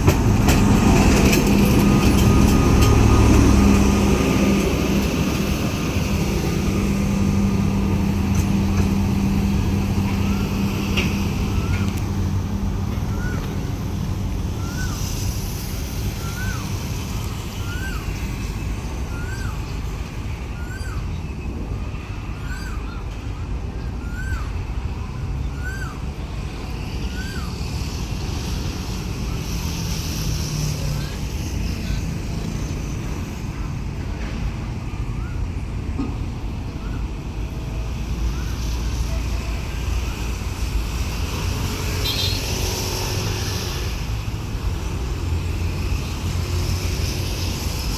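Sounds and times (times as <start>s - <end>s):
diesel engine running: 0.0s - 19.4s
diesel engine drone: 0.0s - 47.9s
bird whistling: 13.1s - 13.5s, 14.5s - 15.1s, 16.2s - 16.7s, 17.6s - 18.1s, 19.1s - 19.6s, 24.0s - 24.6s.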